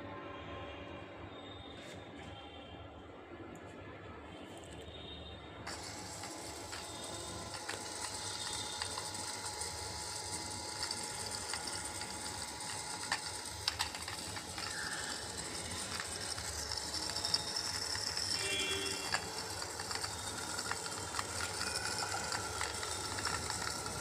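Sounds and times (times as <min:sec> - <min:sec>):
air conditioner blower whirring: 0:05.6 - 0:24.0
mechanical ticking: 0:05.7 - 0:24.0.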